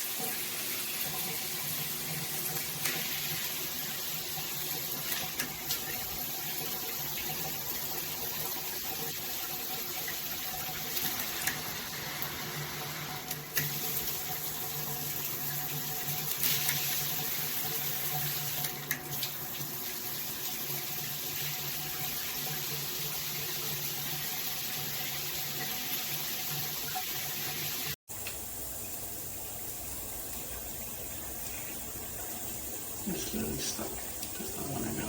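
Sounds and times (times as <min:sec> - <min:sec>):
water spraying from shower head: 0:00.0 - 0:07.5.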